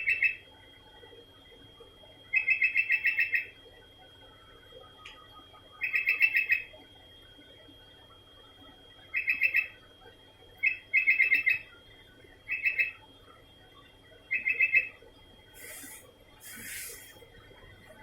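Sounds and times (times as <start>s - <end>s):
bulbul calling: 15.6s - 17.1s.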